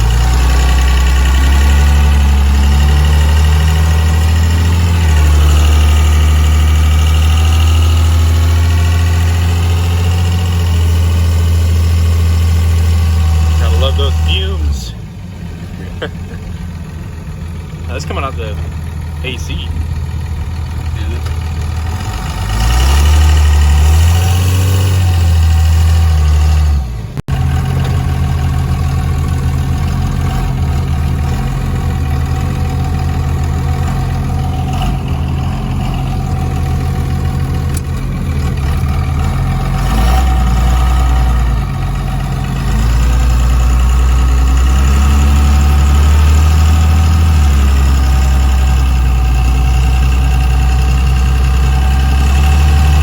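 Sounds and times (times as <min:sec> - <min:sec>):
diesel truck engine running: 0:00.0 - 0:53.0.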